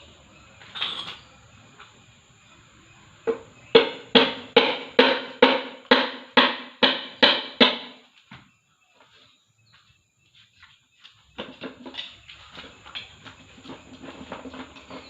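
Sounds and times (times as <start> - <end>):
ringing knocks: 3.3 - 8.0.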